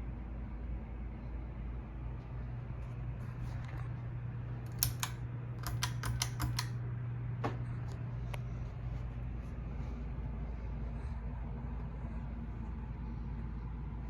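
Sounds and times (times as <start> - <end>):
ceiling fan motor humming: 0.0 - 14.0
sharp clicks: 4.7 - 6.8.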